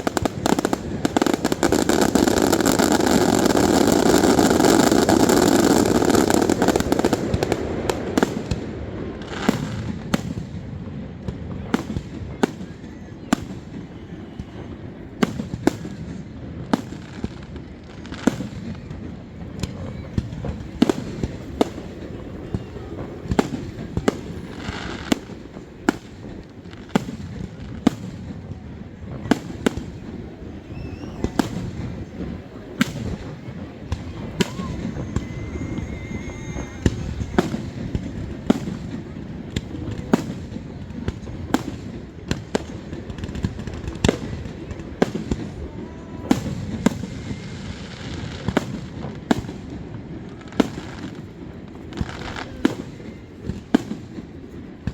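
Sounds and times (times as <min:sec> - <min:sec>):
fireworks sharp bangs: 0:00.0 - 0:54.9
low rumble of distant explosions: 0:00.0 - 0:54.9.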